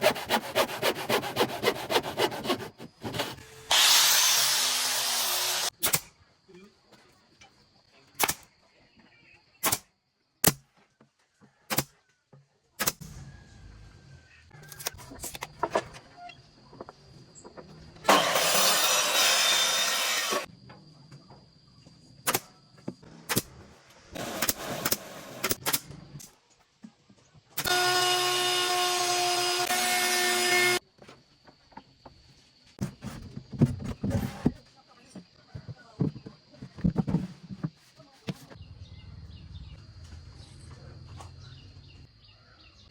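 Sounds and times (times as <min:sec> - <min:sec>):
power tool whining on wood: 0:00.1 - 0:05.7, 0:18.1 - 0:20.5, 0:27.6 - 0:30.8
nails driven into wood: 0:24.2 - 0:25.8.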